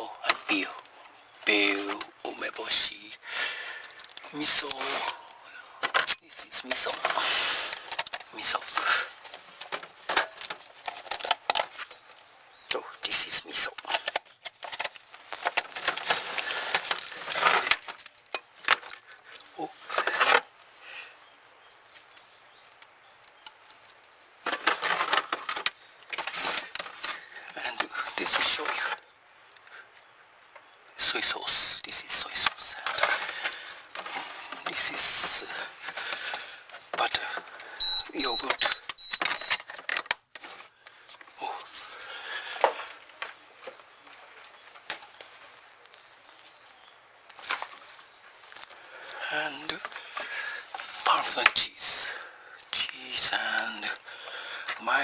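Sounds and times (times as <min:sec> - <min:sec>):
containers clattering and rustling: 0:03.4 - 0:12.3, 0:13.2 - 0:20.6, 0:21.9 - 0:29.0, 0:32.4 - 0:45.6, 0:47.4 - 0:51.6.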